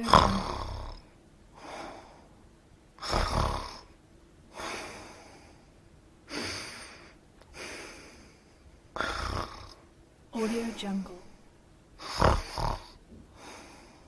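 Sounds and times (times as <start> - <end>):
person snoring: 0.0 - 1.0, 3.0 - 3.9, 9.0 - 9.8, 12.0 - 14.0.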